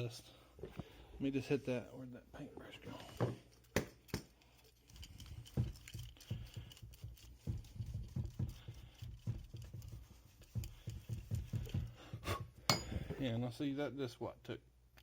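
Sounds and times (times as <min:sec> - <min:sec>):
paintbrush scrubbing: 0:04.6 - 0:12.2.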